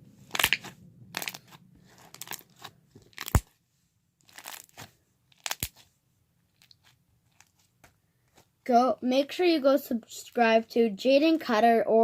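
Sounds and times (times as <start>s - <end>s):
slime crackling and squelching: 0.3s - 3.5s, 4.2s - 5.8s.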